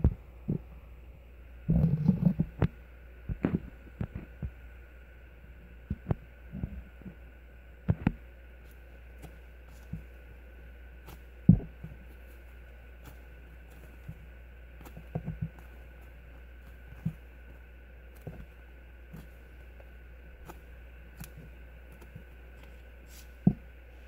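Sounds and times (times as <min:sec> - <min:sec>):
faint steady hum: 0:00.0 - 0:24.0
foam toys squishing: 0:08.6 - 0:24.0.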